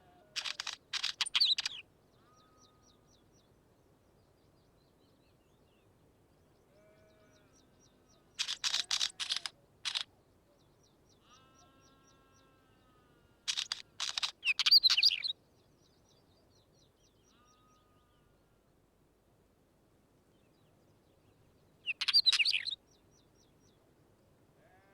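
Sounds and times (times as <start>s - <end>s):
bird harsh scratchy song: 0.4s - 1.8s, 8.4s - 10.1s, 13.5s - 15.3s, 21.9s - 22.8s.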